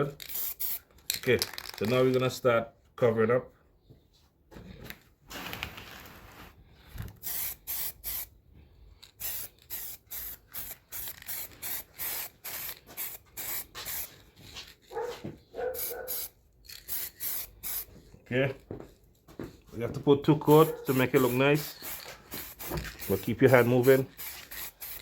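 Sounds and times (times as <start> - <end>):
aerosol can spraying: 0.3 - 0.8, 7.1 - 8.3, 9.1 - 14.2, 15.8 - 17.9, 20.5 - 25.0.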